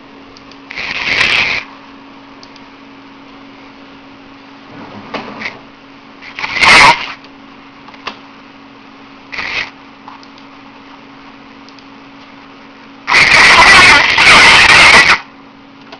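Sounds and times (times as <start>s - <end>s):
phone line hiss: 6.2s - 7.2s, 13.1s - 15.2s.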